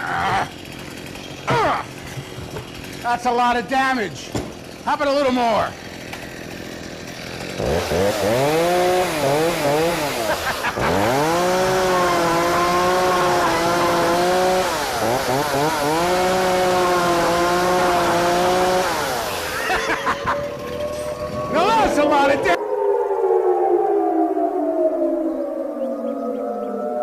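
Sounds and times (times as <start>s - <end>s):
chainsaw revving: 0.0s - 22.5s.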